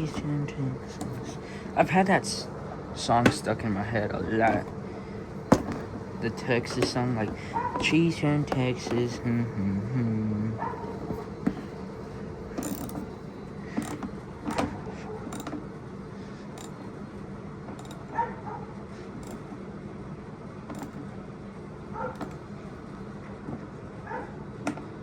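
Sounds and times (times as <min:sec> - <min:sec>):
faint steady hum: 0:00.0 - 0:25.0
sharp knocks: 0:05.5 - 0:05.9
hand tools clinking on metal: 0:05.5 - 0:09.3, 0:12.6 - 0:13.1.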